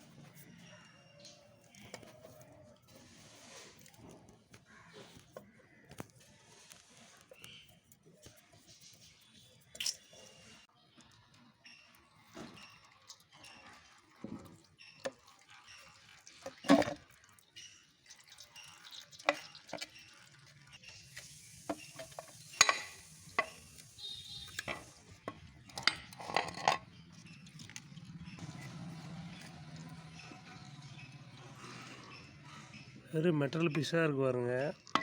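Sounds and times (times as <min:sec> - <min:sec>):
metal tools clinking and knocking: 0:21.7 - 0:23.6, 0:24.6 - 0:26.9.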